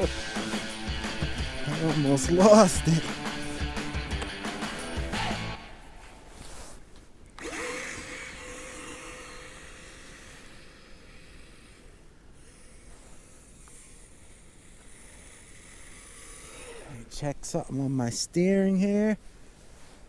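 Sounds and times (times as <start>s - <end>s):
electric motor whining: 0.0s - 5.8s, 7.4s - 9.5s, 15.6s - 17.1s
hiss: 7.5s - 17.1s.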